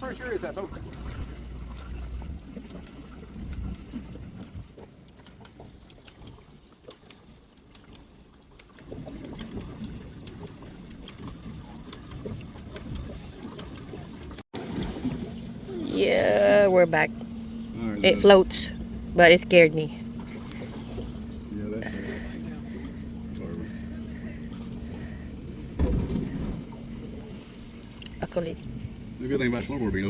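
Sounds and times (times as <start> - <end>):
paddle in water: 0.0 - 30.0
low rumble: 8.9 - 30.0.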